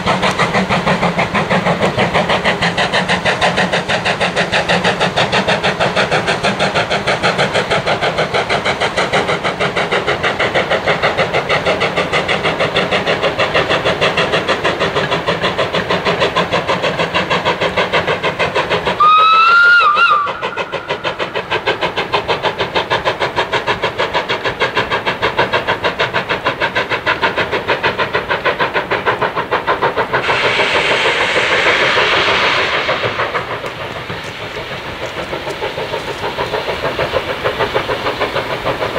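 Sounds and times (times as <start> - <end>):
steam hissing: 0.0 - 38.9
steam locomotive exhaust beating: 0.0 - 38.9
steam whistle: 19.0 - 20.7.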